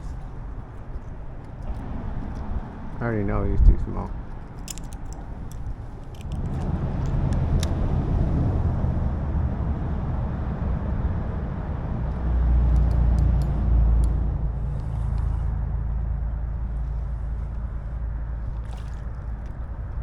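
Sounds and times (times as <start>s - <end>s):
light clicks and taps: 12.7s - 14.2s.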